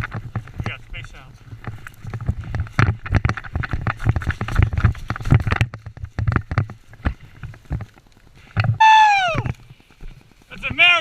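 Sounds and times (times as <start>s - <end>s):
man shouting woo: 8.8s - 9.5s.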